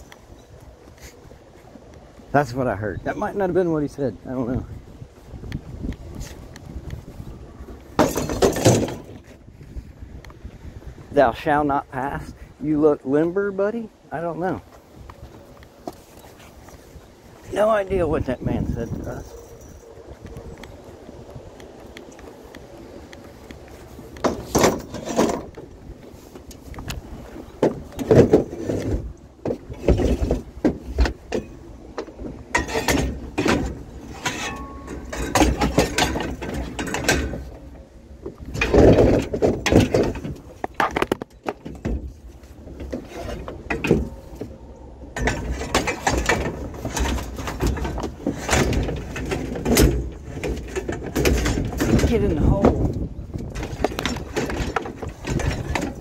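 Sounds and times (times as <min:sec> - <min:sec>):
scrap metal clanking and rattling: 0:06.2 - 0:09.4, 0:23.7 - 0:56.0.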